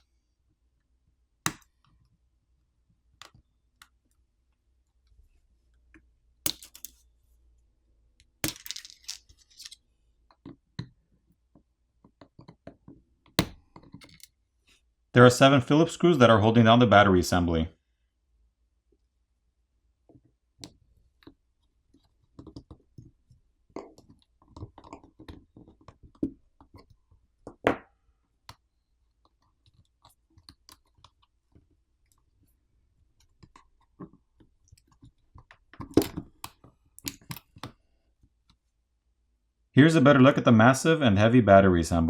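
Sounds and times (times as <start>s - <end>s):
screwdriver clicks and scrapes: 13.9s - 14.3s.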